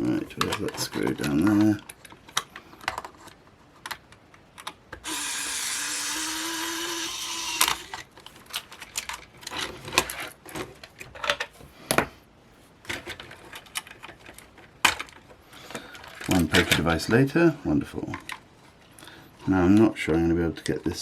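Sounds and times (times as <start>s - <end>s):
small electric motor whirring: 5.0s - 8.0s.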